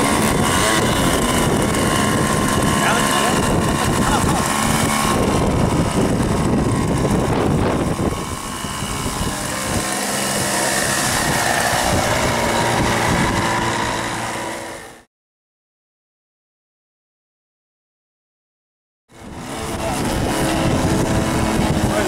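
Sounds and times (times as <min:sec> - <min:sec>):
wind buffeting microphone: 0:00.0 - 0:14.9, 0:19.1 - 0:22.0
model airplane engine running: 0:00.0 - 0:15.1, 0:19.1 - 0:22.0.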